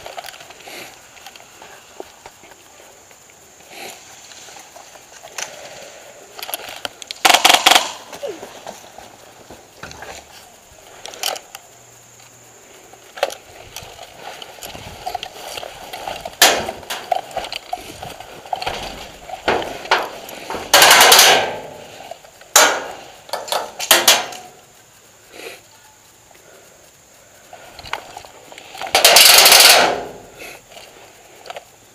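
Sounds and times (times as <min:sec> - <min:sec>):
airsoft gunfire: 0:07.2 - 0:08.1, 0:16.4 - 0:16.9, 0:20.7 - 0:21.8, 0:22.5 - 0:23.1, 0:23.8 - 0:24.5, 0:28.9 - 0:30.2.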